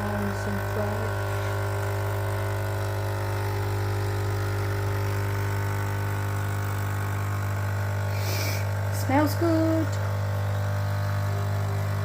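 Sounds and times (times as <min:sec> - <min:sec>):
coffee machine pump buzzing: 0:00.0 - 0:12.0.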